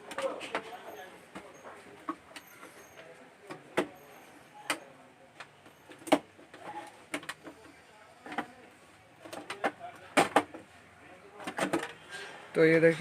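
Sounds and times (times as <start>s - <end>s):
plastic clicks and knocks: 9.2s - 10.6s, 11.4s - 12.0s.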